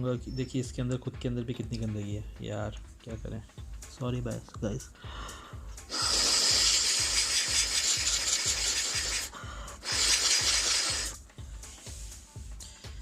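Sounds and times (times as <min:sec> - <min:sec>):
soft background music beat: 0:00.0 - 0:13.0
air blower hissing: 0:05.8 - 0:11.2.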